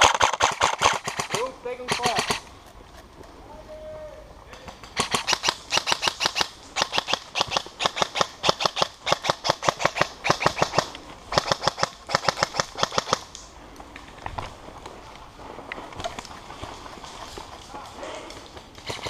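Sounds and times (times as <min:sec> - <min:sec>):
airsoft gun firing bursts: 0:00.0 - 0:02.4, 0:05.0 - 0:13.3.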